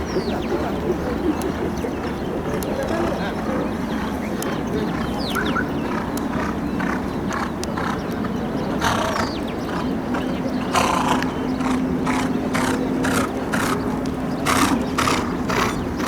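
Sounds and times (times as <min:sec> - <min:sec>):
horse hoofbeats: 0:04.8 - 0:16.0.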